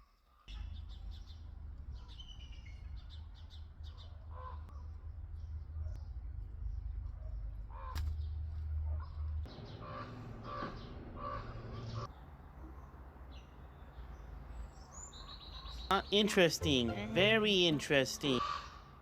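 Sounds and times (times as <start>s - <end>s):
low hum: 0.5s - 12.1s.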